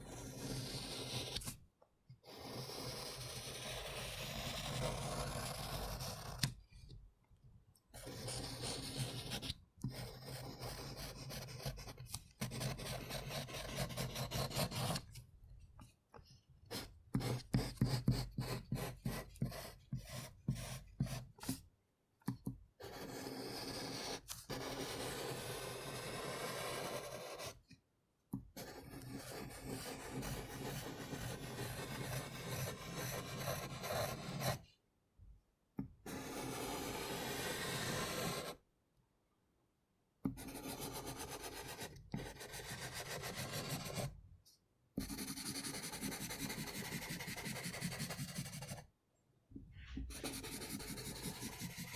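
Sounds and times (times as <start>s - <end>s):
pencil scribbling on paper: 0.0s - 1.5s, 2.2s - 6.5s, 8.0s - 15.1s, 16.7s - 21.5s, 22.8s - 27.6s, 28.6s - 34.6s, 36.1s - 38.6s, 40.3s - 44.1s, 45.0s - 48.8s, 50.1s - 51.9s.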